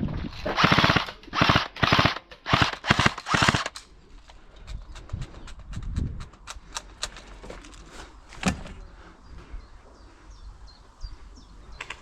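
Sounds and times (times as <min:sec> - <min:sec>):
airsoft gun shots: 0:00.6 - 0:03.7.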